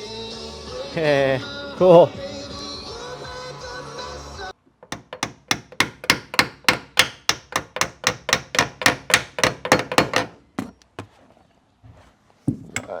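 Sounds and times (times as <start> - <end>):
sharp ringing knocks: 4.8 - 10.8, 12.8 - 13.0.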